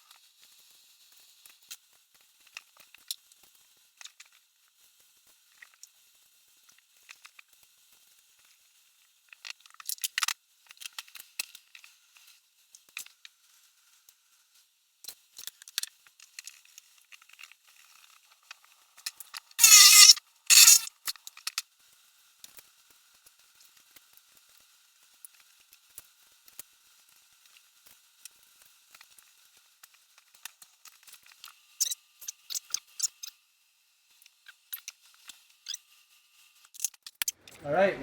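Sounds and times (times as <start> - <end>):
crinkling: 19.6 - 20.9.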